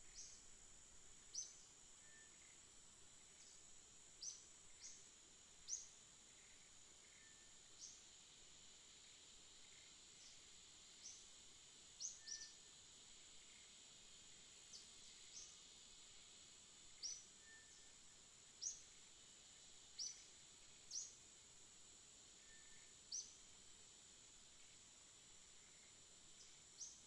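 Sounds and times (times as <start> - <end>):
small birds chirping: 0.0 - 0.5, 1.2 - 2.6, 12.0 - 12.6, 17.0 - 17.8, 20.0 - 21.2
high-pitched hiss: 0.0 - 27.0.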